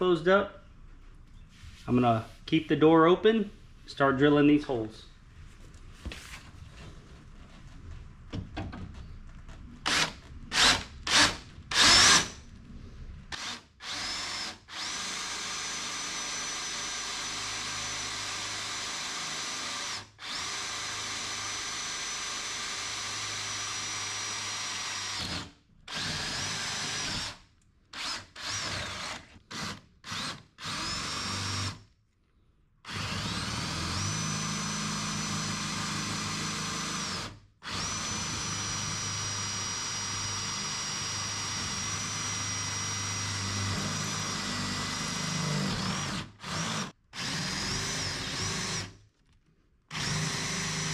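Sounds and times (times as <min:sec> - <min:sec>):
power drill whining: 0:09.8 - 0:12.5, 0:13.3 - 0:31.8, 0:32.9 - 0:49.0, 0:49.9 - 0:50.9.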